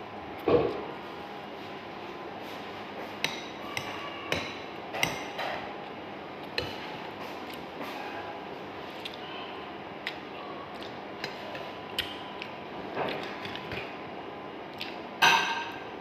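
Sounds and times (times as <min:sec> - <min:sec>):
cutlery clinking against a plate: 0:03.2 - 0:05.7.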